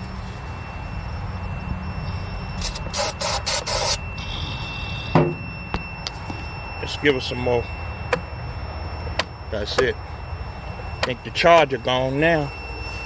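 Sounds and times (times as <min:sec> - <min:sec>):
aerosol spray hissing bursts: 0:02.6 - 0:04.0.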